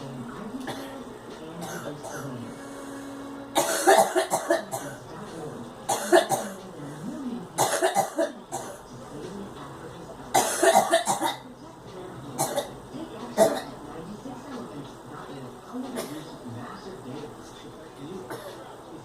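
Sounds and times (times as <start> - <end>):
girl coughing: 0.7 - 1.0, 1.6 - 2.3, 3.6 - 5.0, 5.9 - 6.6, 7.6 - 8.8, 10.4 - 11.4, 12.4 - 12.7, 13.4 - 13.7, 16.0 - 16.2, 18.3 - 18.6.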